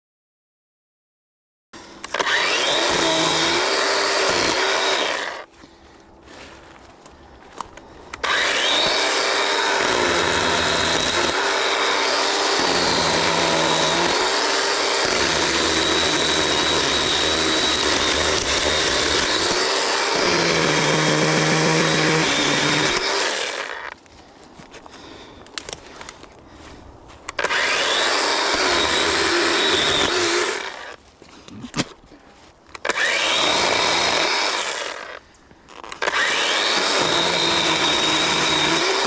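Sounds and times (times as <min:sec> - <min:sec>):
chainsaw cutting wood: 0:01.9 - 0:05.5, 0:08.2 - 0:24.0, 0:27.3 - 0:31.9, 0:32.7 - 0:39.0.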